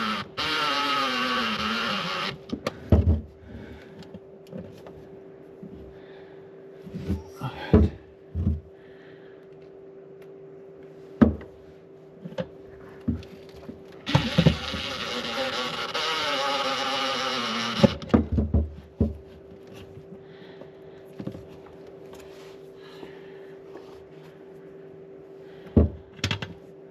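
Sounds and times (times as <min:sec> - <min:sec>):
cordless drill driving screw: 0:00.0 - 0:02.4, 0:14.0 - 0:18.1
knocks and clatter of parts: 0:02.4 - 0:03.4, 0:17.8 - 0:20.0.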